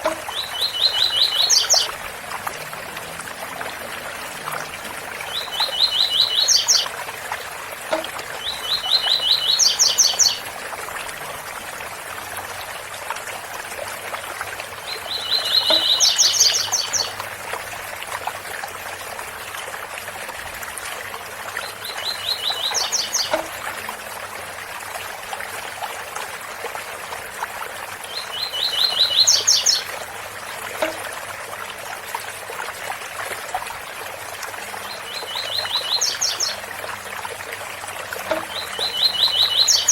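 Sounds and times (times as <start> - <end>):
waterfall rushing: 0.0 - 7.1
bird singing: 0.3 - 2.0, 4.4 - 6.9, 8.4 - 10.4, 14.9 - 17.1, 21.7 - 23.5, 28.2 - 29.9, 34.9 - 36.6, 38.3 - 39.9.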